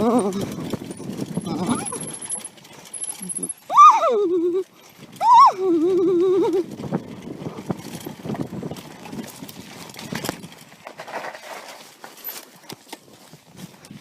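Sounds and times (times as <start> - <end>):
mountain bike clattering: 0.0 - 14.0
person shouting: 3.7 - 4.5, 5.2 - 5.8.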